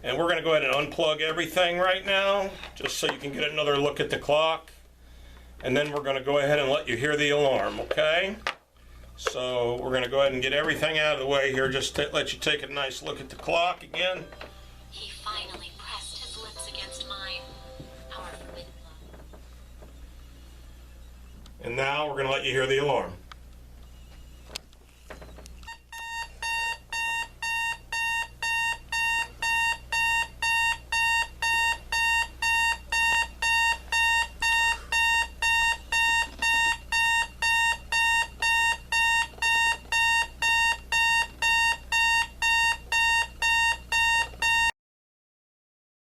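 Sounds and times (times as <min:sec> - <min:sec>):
alarm clock beeping: 0:25.7 - 0:44.7.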